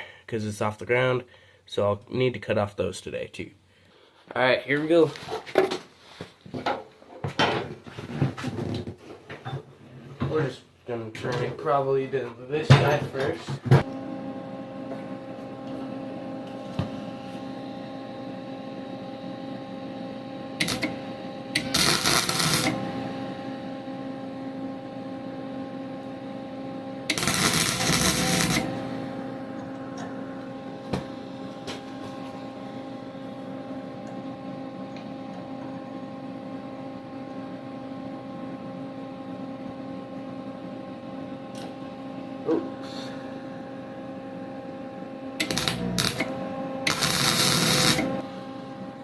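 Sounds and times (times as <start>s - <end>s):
welder humming: 11.9s - 49.0s
welding crackle: 20.6s - 20.9s, 21.6s - 22.9s, 27.1s - 28.8s, 45.4s - 48.2s.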